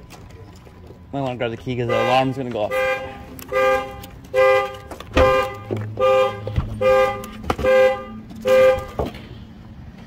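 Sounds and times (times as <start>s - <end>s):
car alarm horn honks: 1.8s - 9.0s.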